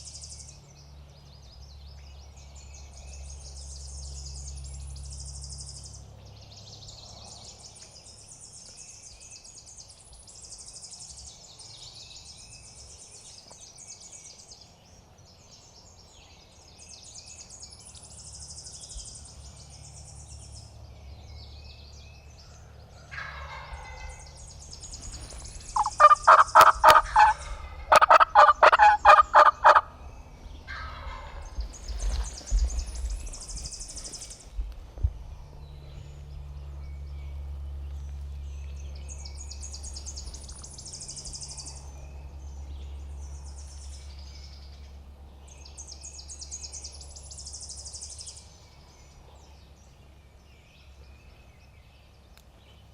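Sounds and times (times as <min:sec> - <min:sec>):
small birds chirping: 0:00.0 - 0:52.9
turkey gobbling: 0:25.8 - 0:30.0.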